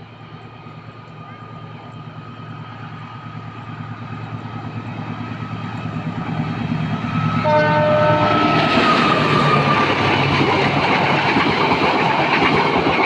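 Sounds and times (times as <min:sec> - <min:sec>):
locomotive engine rumble: 0:00.0 - 0:13.0
locomotive horn chord: 0:07.4 - 0:08.7.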